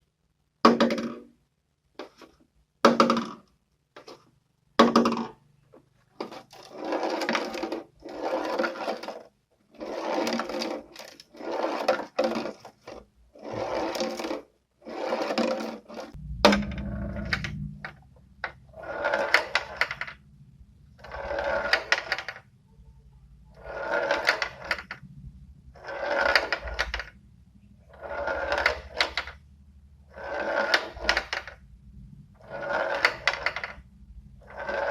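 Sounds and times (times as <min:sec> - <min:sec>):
beads rolling on plastic tray: 0:02.0 - 0:05.4, 0:06.0 - 0:20.2, 0:20.9 - 0:22.5, 0:23.5 - 0:25.1, 0:25.7 - 0:27.2, 0:27.8 - 0:31.6, 0:32.3 - 0:34.9.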